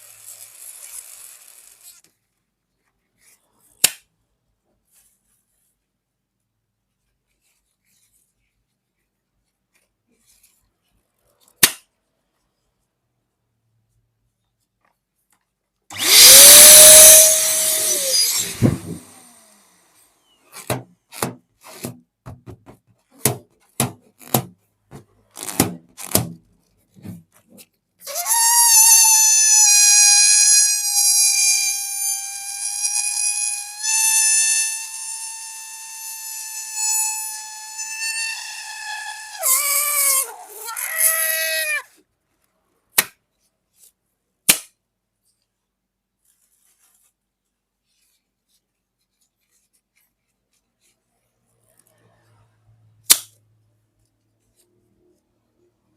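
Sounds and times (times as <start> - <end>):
balloon squealing: 15.9 - 19.4, 28.0 - 42.0.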